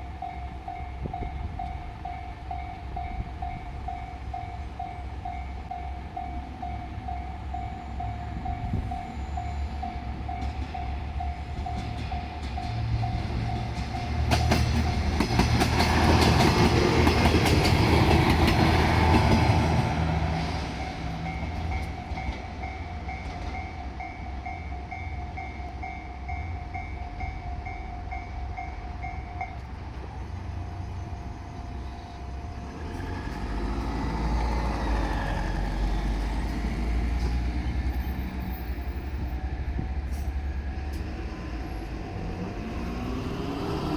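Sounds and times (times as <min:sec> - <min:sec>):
train engine and wheels: 0:00.0 - 0:43.9
wheels clicking over rail joints: 0:10.2 - 0:20.6
road vehicle engine rumbling: 0:27.1 - 0:43.9.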